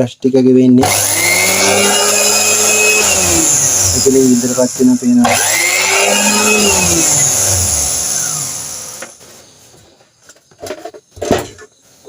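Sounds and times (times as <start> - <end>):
blender motor running: 0.8 - 9.2
motor winding down whine: 0.8 - 9.2.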